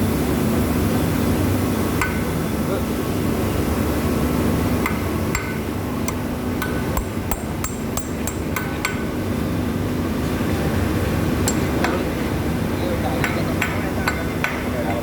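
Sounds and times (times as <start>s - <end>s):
steady low hum: 0.0s - 15.0s
hammer tapping on metal: 2.0s - 2.4s, 4.8s - 9.2s, 11.4s - 12.1s, 13.2s - 15.0s.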